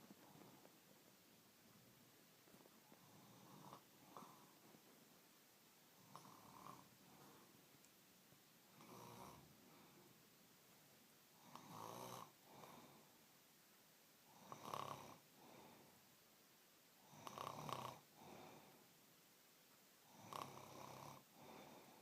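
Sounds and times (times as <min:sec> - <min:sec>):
quiet snoring: 0:02.5 - 0:04.8, 0:05.9 - 0:07.6, 0:08.7 - 0:10.2, 0:11.3 - 0:13.2, 0:14.2 - 0:16.0, 0:17.0 - 0:18.9, 0:20.0 - 0:22.0.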